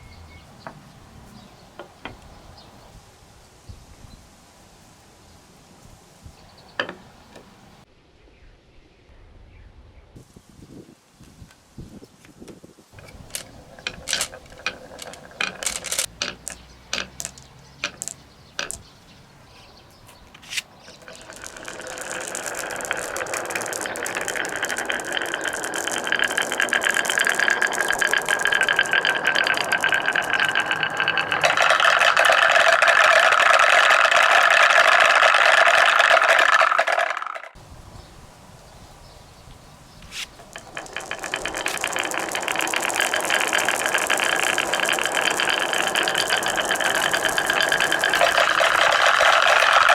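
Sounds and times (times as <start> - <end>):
marbles rattling down wooden run: 13.0 - 18.9, 20.4 - 37.6, 40.2 - 49.9.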